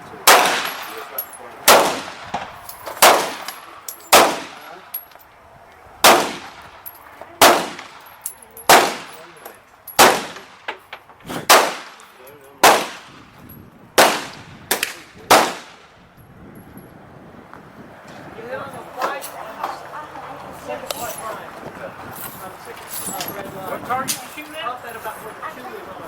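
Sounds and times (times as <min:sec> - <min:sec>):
handgun shots: 0:00.3 - 0:01.0, 0:01.7 - 0:02.3, 0:02.9 - 0:04.6, 0:06.0 - 0:06.6, 0:07.4 - 0:08.0, 0:08.7 - 0:09.2, 0:10.0 - 0:10.5, 0:11.3 - 0:12.0, 0:12.6 - 0:13.1, 0:14.0 - 0:15.8.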